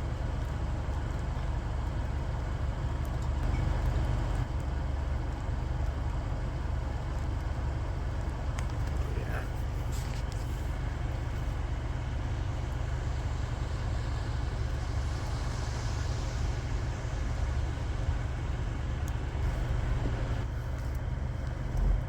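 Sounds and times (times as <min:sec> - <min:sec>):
rain falling: 0:00.4 - 0:21.3
low rumble: 0:08.9 - 0:20.7.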